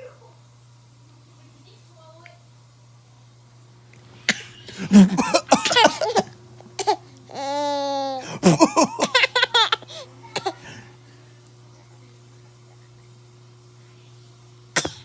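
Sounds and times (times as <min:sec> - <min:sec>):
man coughing: 0:04.3 - 0:07.0, 0:08.2 - 0:10.8, 0:14.8 - 0:15.0
baby laughing: 0:04.8 - 0:10.6.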